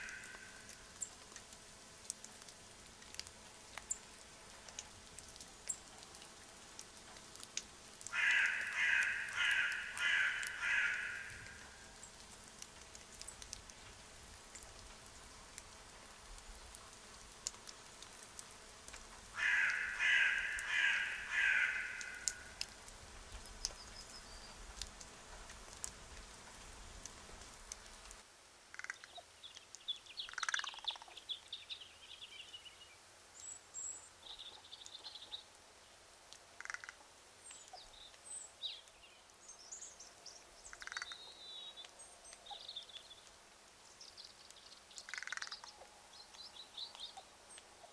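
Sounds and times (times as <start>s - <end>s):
crow cawing: 0.0s - 0.6s, 8.1s - 11.8s, 19.3s - 22.6s
rain pattering: 0.0s - 31.7s, 33.0s - 47.9s
songbirds chirping: 8.2s - 12.3s, 19.4s - 22.6s, 28.9s - 36.0s, 37.4s - 47.9s.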